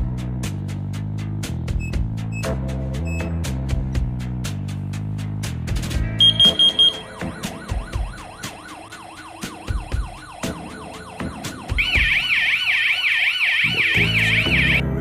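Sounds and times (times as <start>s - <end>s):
fire alarm warbling: 6.2s - 14.8s
higher-pitched alarm warble: 6.2s - 14.8s.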